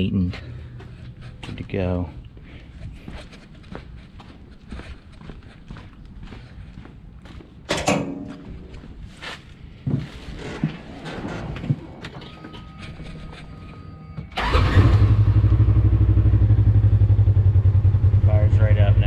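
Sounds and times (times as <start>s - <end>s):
engine starting and idling: 14.3s - 16.8s.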